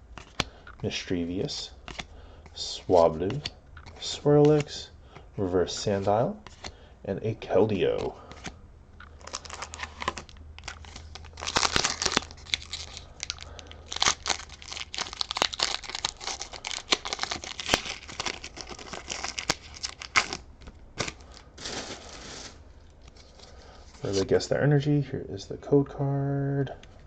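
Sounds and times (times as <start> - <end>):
cards rustling and clicking: 0.0 - 4.8, 5.9 - 6.8, 7.7 - 24.3
foil wrapper tearing and crinkling: 9.2 - 20.4.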